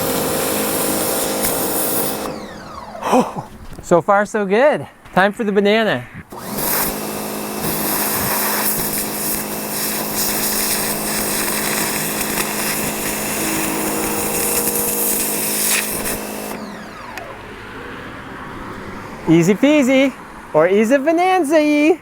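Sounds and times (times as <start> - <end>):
high-pressure water jet hissing: 0.0 - 2.4, 6.2 - 16.9
electric motor hum: 0.0 - 3.8, 6.1 - 18.1.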